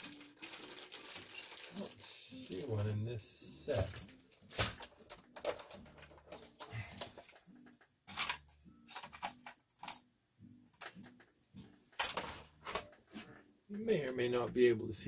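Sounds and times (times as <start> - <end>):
small metal parts clinking: 0.0 - 3.0, 3.7 - 11.2.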